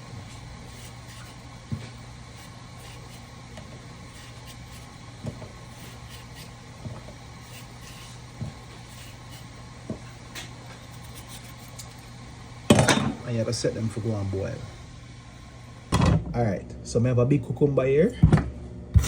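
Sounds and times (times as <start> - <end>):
potato peeling scrapes: 0.0 - 12.2
steady low hum: 0.0 - 19.0.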